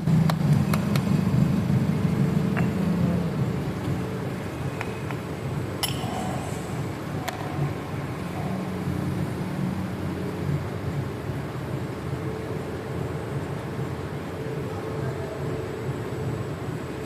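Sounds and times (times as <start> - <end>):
low mechanical hum: 0.0 - 17.0
sharp metallic clinks: 5.8 - 6.8.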